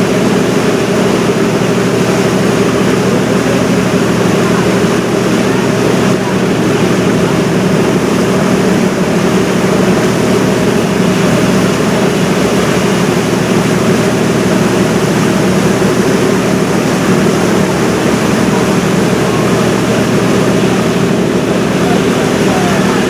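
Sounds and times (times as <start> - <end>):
boat engine droning: 0.0 - 23.0
water rushing: 0.0 - 23.0.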